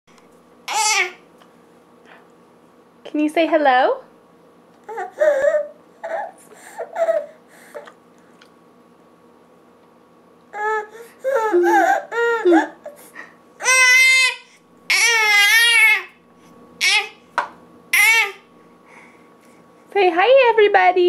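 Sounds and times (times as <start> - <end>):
baby crying sounds: 0.7 - 1.2, 4.8 - 7.4, 10.5 - 12.9, 13.6 - 16.2, 16.8 - 17.2, 17.9 - 18.5
baby squealing: 0.7 - 1.2, 13.6 - 16.1, 16.8 - 17.2, 17.9 - 18.4.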